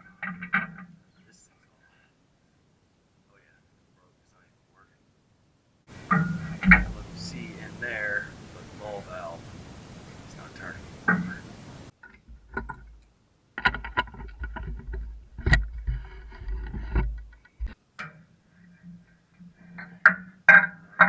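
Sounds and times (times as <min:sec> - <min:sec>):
knocks and clanks: 0:05.9 - 0:09.3, 0:10.2 - 0:21.0
low rumble: 0:05.9 - 0:12.5.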